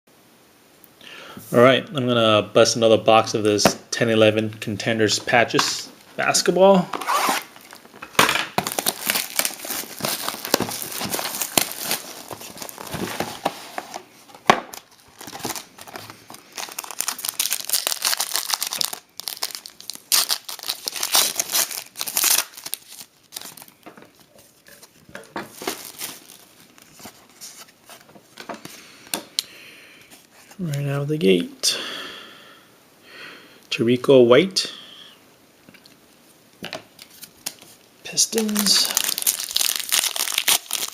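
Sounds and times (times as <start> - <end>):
wrapping torn and crinkled: 6.9 - 28.0, 37.0 - 40.9.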